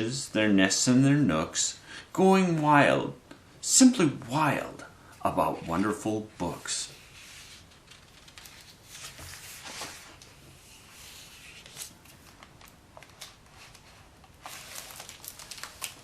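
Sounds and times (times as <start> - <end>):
book pages rustling: 5.5 - 16.0.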